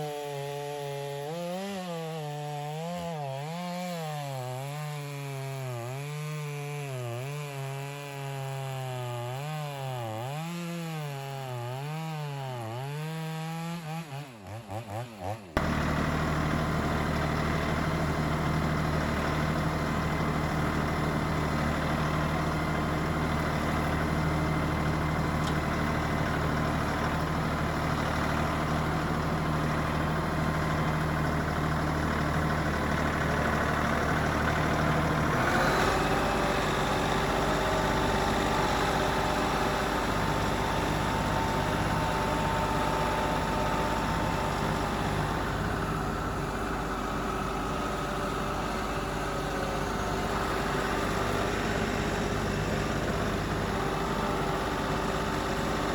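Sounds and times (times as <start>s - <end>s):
chainsaw cutting log: 0.0s - 55.9s
engine running steadily: 15.5s - 55.9s.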